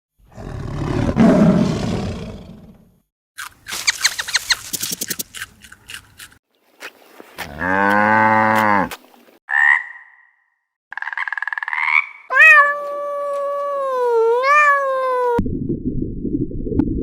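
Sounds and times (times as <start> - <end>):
cow mooing: 7.4 - 9.0.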